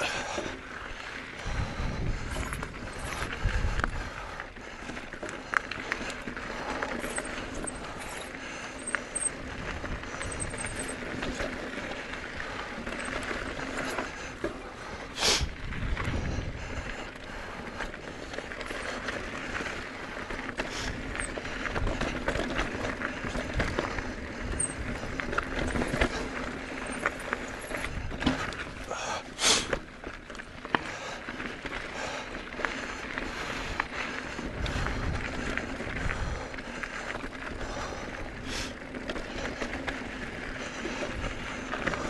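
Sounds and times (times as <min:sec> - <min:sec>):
crunching along dirt trail: 0:00.0 - 0:42.0
wind rumble on microphone: 0:01.4 - 0:04.4, 0:09.3 - 0:11.5, 0:15.4 - 0:17.5, 0:34.4 - 0:36.6.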